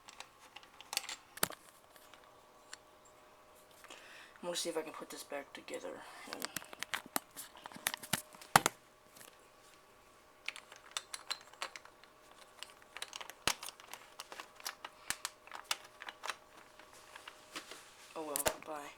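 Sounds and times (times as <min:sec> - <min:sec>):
plastic pieces clicking and snapping: 0:00.0 - 0:02.8, 0:06.3 - 0:09.4, 0:10.4 - 0:17.4.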